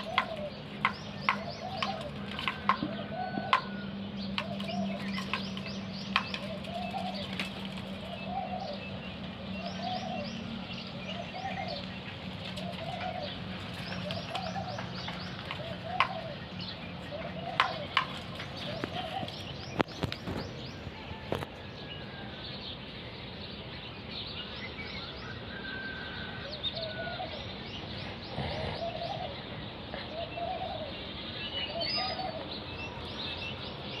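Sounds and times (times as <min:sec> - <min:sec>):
low dove-like coos: 0:00.0 - 0:05.4, 0:06.2 - 0:19.6, 0:25.6 - 0:33.0.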